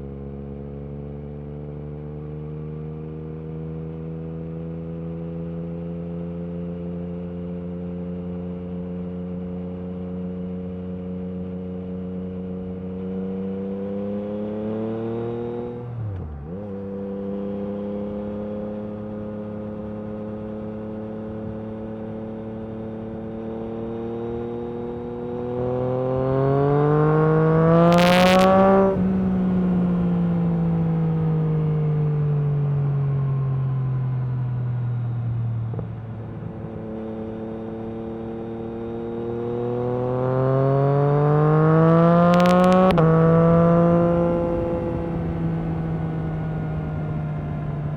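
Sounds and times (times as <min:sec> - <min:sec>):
motorcycle engine revving: 0:23.3 - 0:30.6, 0:35.7 - 0:47.7.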